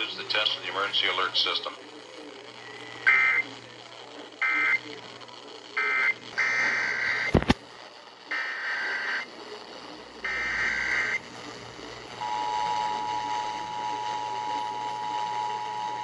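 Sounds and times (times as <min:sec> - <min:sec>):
screechy digital data bursts: 0:02.6 - 0:03.6, 0:05.8 - 0:07.4, 0:08.3 - 0:09.3, 0:10.2 - 0:11.3.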